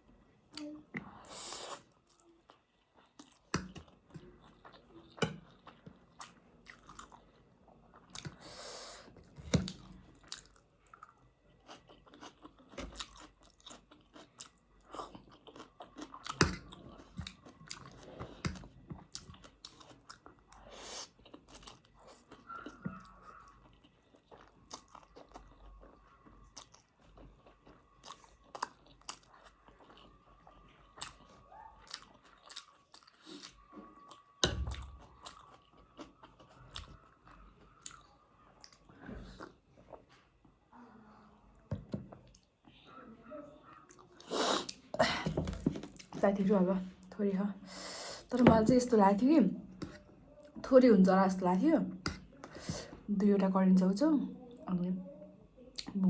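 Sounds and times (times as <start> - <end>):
person chewing and crunching: 0.6 - 8.6, 9.2 - 40.2.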